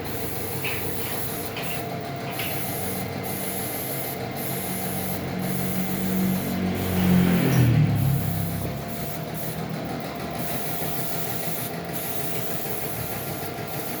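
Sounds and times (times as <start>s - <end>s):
electric motor winding down: 4.7s - 11.7s.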